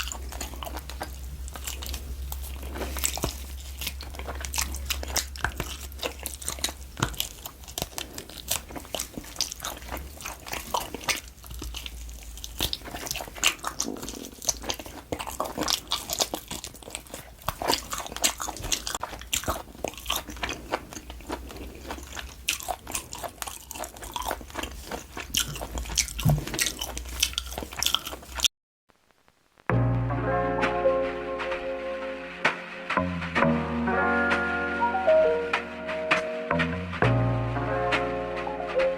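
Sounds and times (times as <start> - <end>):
close chewing and biting: 0.0 - 28.5.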